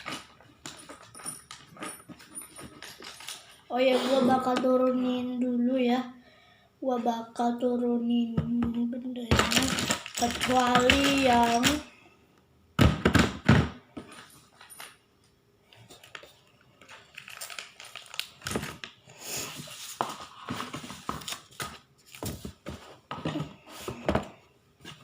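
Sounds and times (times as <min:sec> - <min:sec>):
game pieces clicking and rustling: 0:09.3 - 0:11.9.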